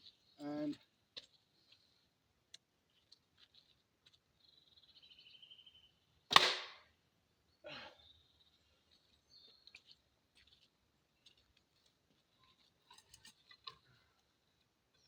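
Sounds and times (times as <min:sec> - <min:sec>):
bow shot crack: 0:06.3 - 0:06.9.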